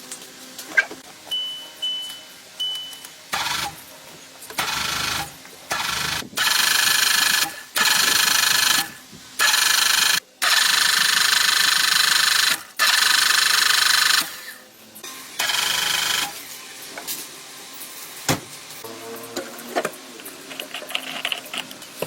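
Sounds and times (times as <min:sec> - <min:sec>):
handheld power tool running: 0:03.4 - 0:03.8, 0:04.6 - 0:14.5, 0:15.4 - 0:16.4.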